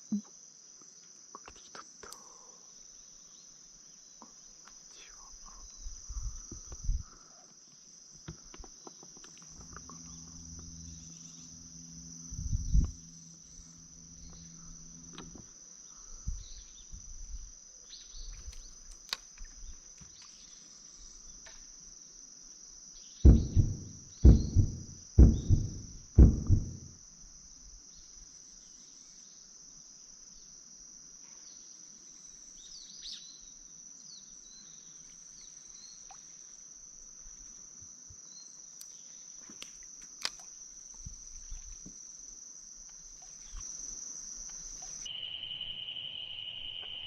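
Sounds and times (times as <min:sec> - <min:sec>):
crickets chirring: 0:00.0 - 0:47.0
low hum: 0:09.4 - 0:17.5, 0:23.2 - 0:27.1
low knocks: 0:09.6 - 0:15.6, 0:23.2 - 0:27.0
heavy thumps: 0:23.2 - 0:27.0.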